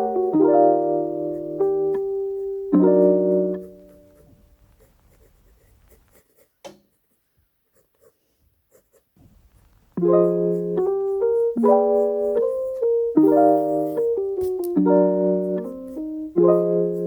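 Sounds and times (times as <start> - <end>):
piano music: 0.0 - 4.4, 10.0 - 17.0
pencil scratching on paper: 2.4 - 17.0.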